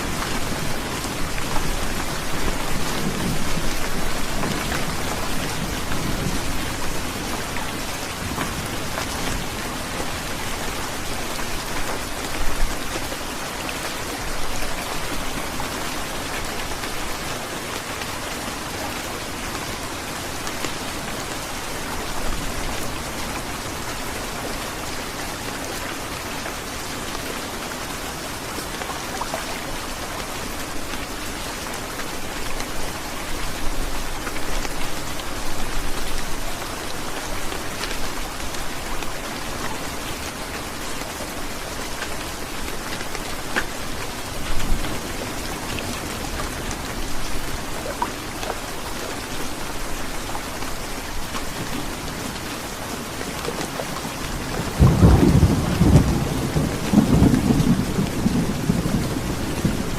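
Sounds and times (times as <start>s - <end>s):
heavy rain falling: 0.0s - 59.9s
low roll of thunder: 54.8s - 59.9s.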